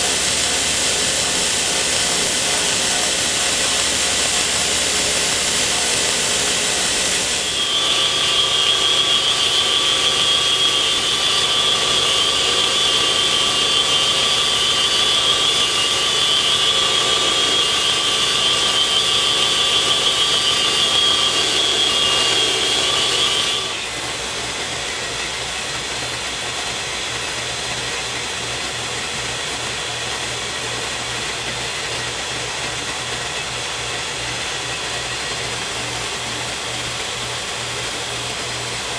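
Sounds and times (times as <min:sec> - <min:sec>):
belt sander whining: 0:00.0 - 0:25.0.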